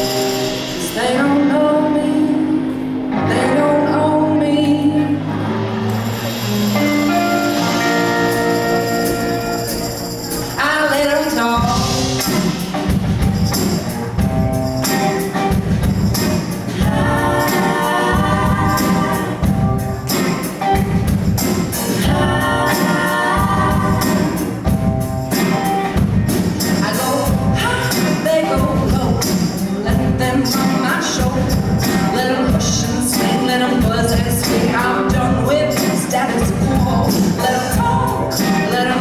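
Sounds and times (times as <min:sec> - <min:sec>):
jingling hand percussion: 0:00.0 - 0:01.0, 0:05.9 - 0:39.0
steady beat: 0:11.6 - 0:29.7
women singing in harmony: 0:16.7 - 0:19.8, 0:21.9 - 0:24.6.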